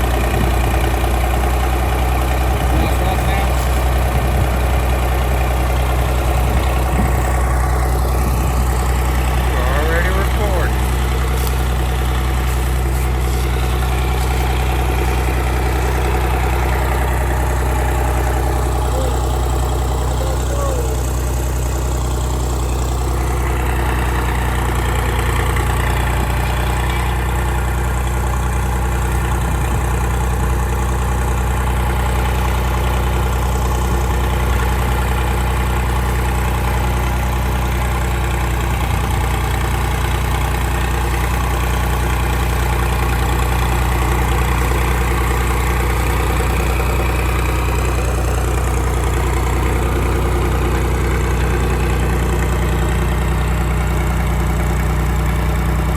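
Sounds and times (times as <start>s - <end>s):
engine idling: 0.0s - 55.9s.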